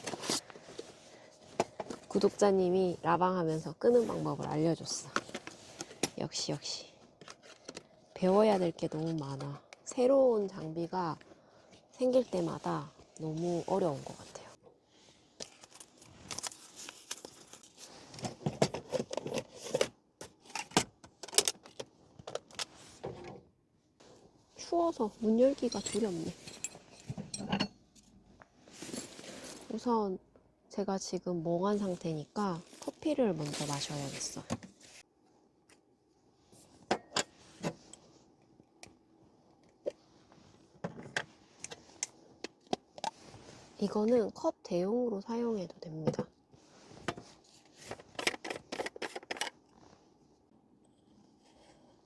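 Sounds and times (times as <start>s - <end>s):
rustling: 28.6s - 29.8s.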